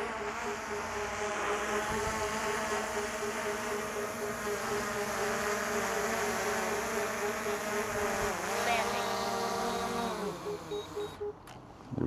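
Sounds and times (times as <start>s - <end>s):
drone propellers buzzing: 0.0s - 12.0s.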